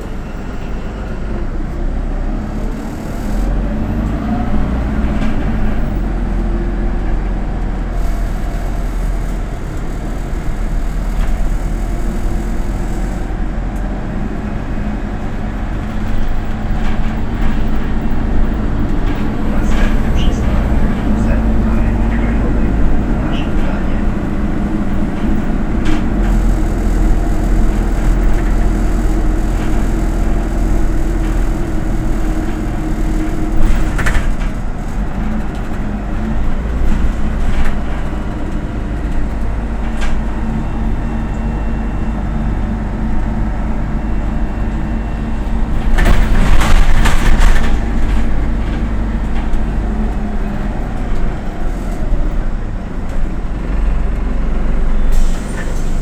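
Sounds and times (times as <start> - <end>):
bus engine drone: 0.0 - 56.0
road noise and rattles: 0.0 - 56.0
loud burst of noise: 16.3 - 34.9, 45.6 - 48.8.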